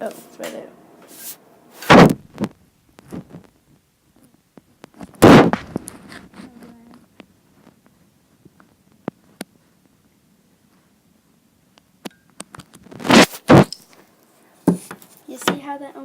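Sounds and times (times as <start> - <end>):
loud thump: 1.8 - 2.2, 5.2 - 5.7.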